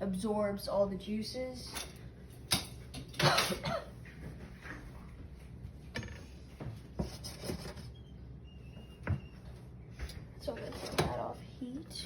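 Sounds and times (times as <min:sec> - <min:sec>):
cookware and utensils clattering: 0:01.7 - 0:04.4.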